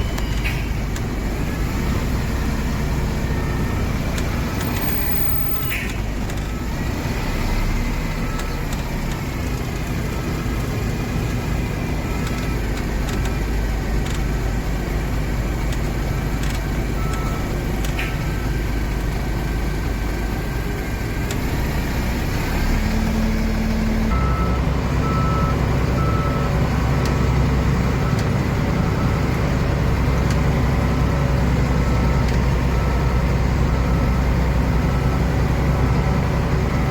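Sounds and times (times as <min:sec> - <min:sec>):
heavy machine engine running: 0:00.0 - 0:36.9
reversing alarm beeping: 0:02.3 - 0:06.8, 0:17.0 - 0:18.7, 0:24.1 - 0:30.1.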